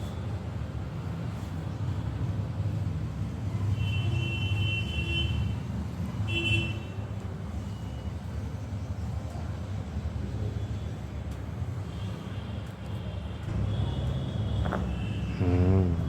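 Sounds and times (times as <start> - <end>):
road traffic rumble: 0.1 - 16.0.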